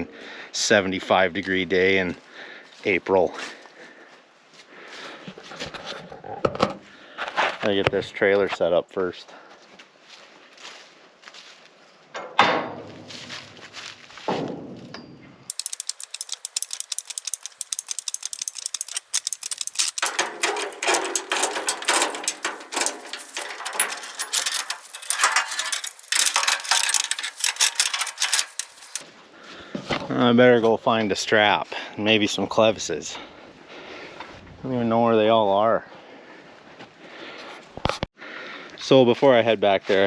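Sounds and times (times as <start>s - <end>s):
ratcheting clicks: 15.5s - 29.0s
sharp metal clanks: 15.5s - 29.0s.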